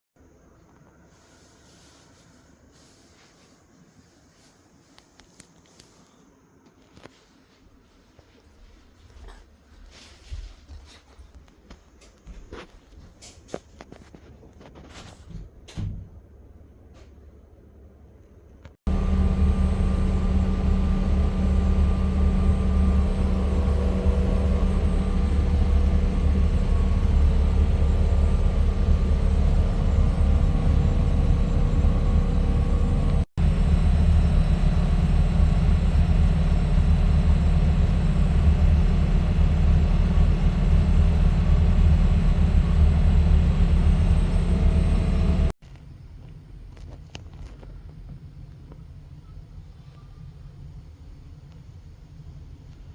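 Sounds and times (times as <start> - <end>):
loud machine drone: 18.9 - 45.6.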